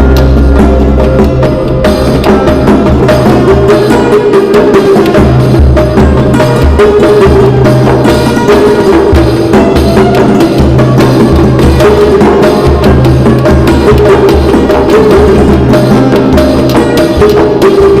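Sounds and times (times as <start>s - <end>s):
sustained low tones: 0.0s - 4.2s
hand drum percussion: 0.0s - 18.0s.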